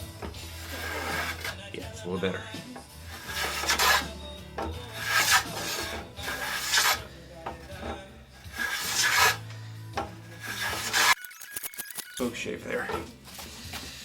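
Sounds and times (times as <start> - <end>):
blade shaving wood: 0.0 - 1.7, 3.0 - 11.3.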